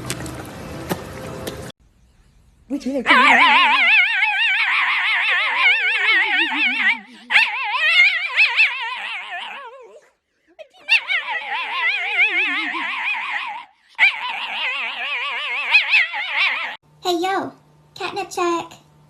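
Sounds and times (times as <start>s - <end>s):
dog howling: 3.1s - 16.8s.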